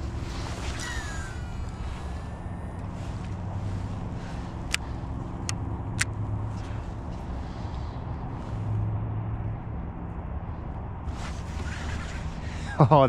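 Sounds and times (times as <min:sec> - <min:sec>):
low motor hum: 0:00.0 - 0:13.0
sharp clicks: 0:04.6 - 0:06.2.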